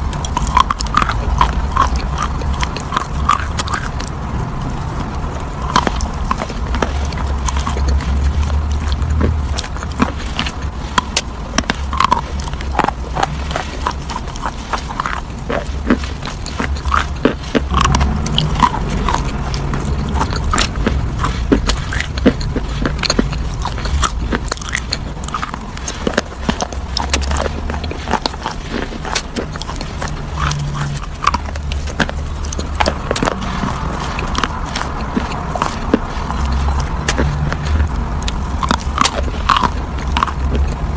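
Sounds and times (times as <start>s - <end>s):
chewing crunchy food: 0.0s - 40.9s.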